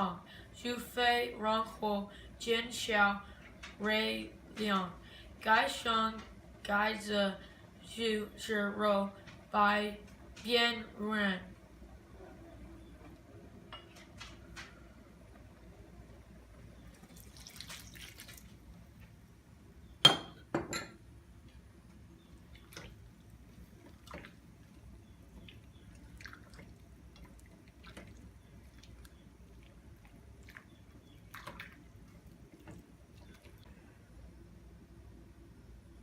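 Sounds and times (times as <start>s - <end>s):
cookware clinking: 20.0s - 21.0s.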